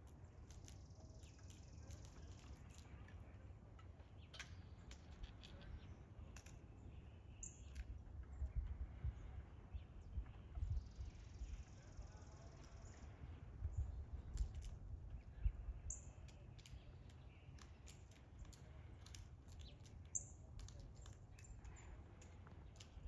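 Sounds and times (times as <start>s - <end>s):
small birds chirping: 0.0s - 23.0s
light ticks: 16.2s - 23.0s.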